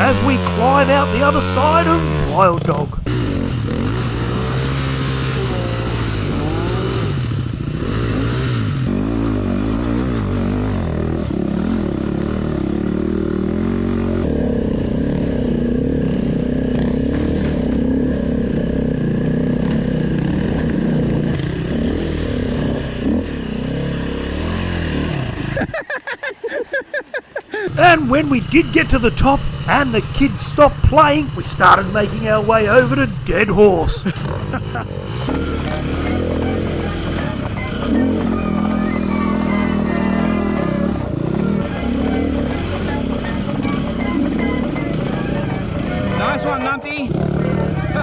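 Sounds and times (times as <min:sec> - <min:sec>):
dirt bike engine revving: 0:00.0 - 0:26.0, 0:27.6 - 0:48.0.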